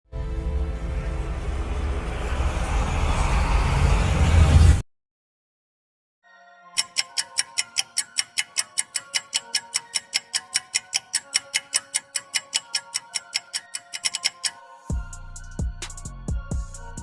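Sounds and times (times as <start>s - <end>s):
clock ticking timer: 6.8s - 14.6s.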